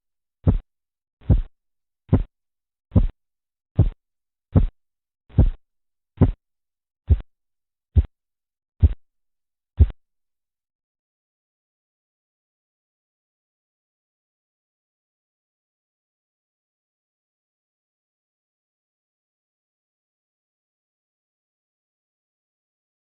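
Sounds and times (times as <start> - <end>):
heartbeat thumps through stethoscope: 0.4 - 1.5, 2.1 - 2.3, 2.9 - 3.2, 3.8 - 5.6, 6.2 - 6.4, 7.1 - 7.3, 8.8 - 9.0, 9.8 - 10.0.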